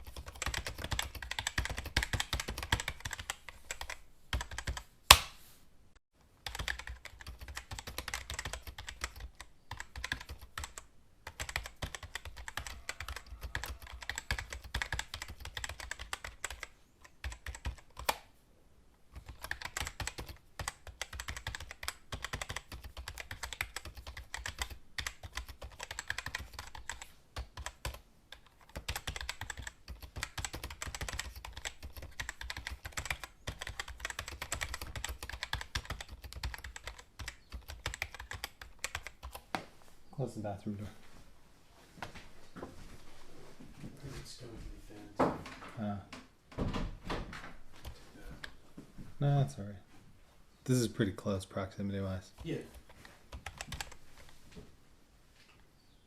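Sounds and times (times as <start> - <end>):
fast typing on keyboard: 0.0 - 4.8, 6.4 - 18.2, 19.2 - 39.4, 52.4 - 54.3.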